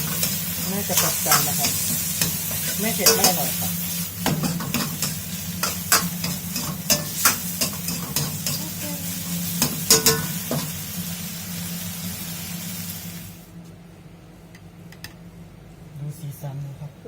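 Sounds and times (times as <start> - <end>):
meat sizzling in a pan: 0.0 - 13.5
steady low hum: 0.0 - 17.0
metal spatula clacking on pan: 3.0 - 3.5, 4.3 - 8.6, 9.6 - 10.6.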